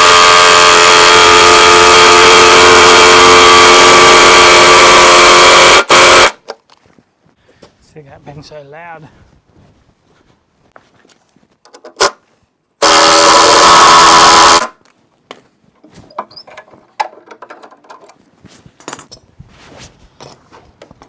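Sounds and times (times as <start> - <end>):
power tool running: 0.0 - 6.4, 12.8 - 14.7.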